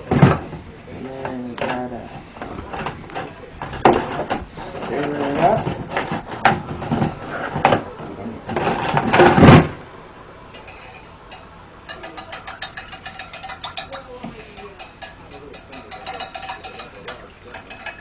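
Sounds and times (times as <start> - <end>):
spoon clinking against cooking pot: 10.5 - 18.0.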